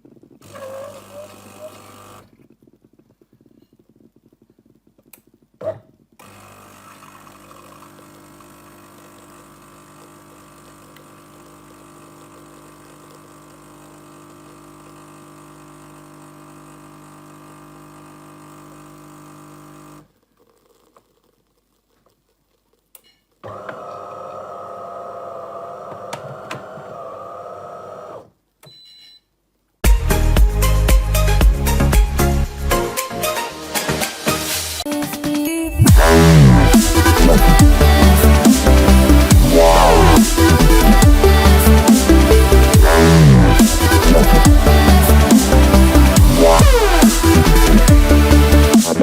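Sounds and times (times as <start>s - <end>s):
espresso machine motor hum: 0.1s - 2.2s, 6.2s - 20.0s, 23.4s - 28.2s, 36.5s - 48.7s.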